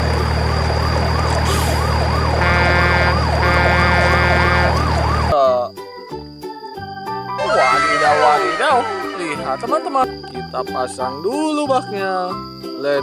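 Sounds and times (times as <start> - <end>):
low engine hum: 0.0 - 5.3
siren wailing: 0.0 - 5.4, 7.3 - 10.1
horn blasts: 2.4 - 5.0
music: 5.3 - 13.0.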